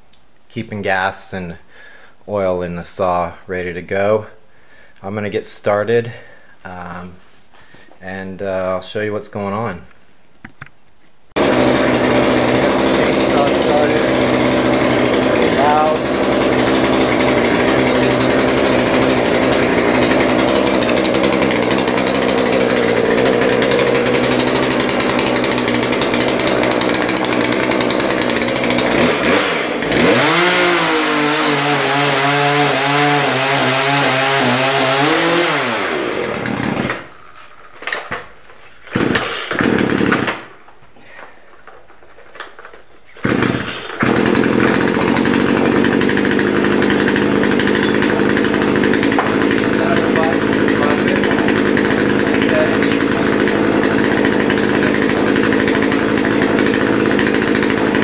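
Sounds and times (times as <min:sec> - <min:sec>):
chainsaw cutting firewood: 0:11.4 - 0:41.3, 0:42.4 - 0:58.0.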